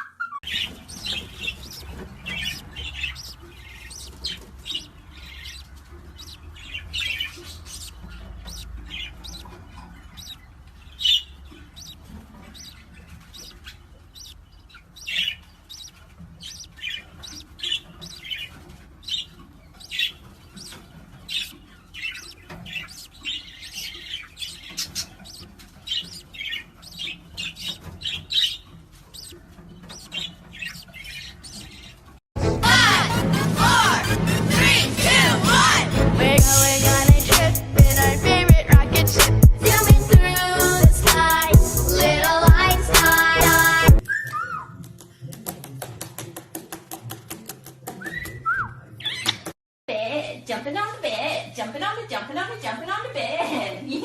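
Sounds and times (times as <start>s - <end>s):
parrot chirping and squawking: 0.0s - 32.2s, 36.4s - 44.8s.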